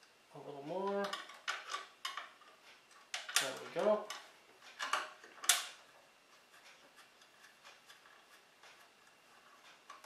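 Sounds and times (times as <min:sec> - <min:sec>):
faint light clicks and rubs: 0:06.3 - 0:10.0.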